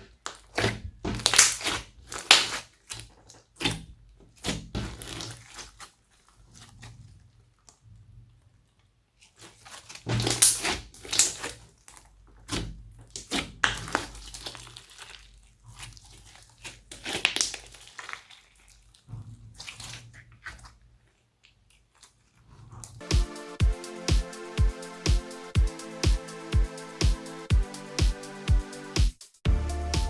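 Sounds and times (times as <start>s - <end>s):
slime squishing and crackling: 0.0s - 7.8s, 9.2s - 23.0s.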